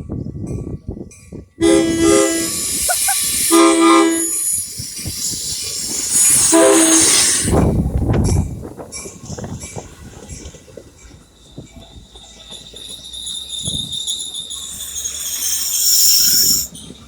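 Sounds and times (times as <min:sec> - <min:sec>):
passing train rushing and clatter: 0:00.0 - 0:17.0
train air horn blasts: 0:01.6 - 0:04.6, 0:06.3 - 0:07.6.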